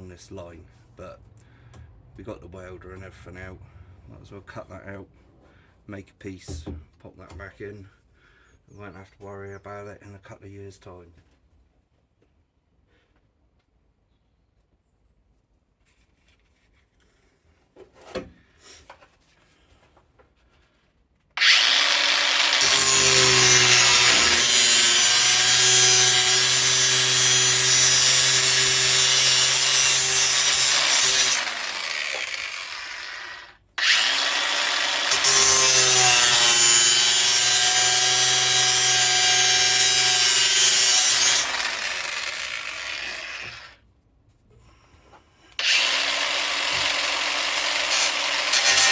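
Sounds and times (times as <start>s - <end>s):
angle grinder cutting sheet steel: 21.4s - 43.8s, 45.6s - 48.9s.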